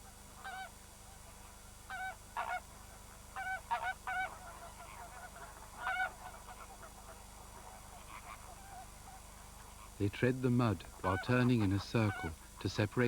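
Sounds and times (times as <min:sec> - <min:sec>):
faint flock calls: 0:00.0 - 0:13.0
flamingos calling: 0:11.0 - 0:12.9.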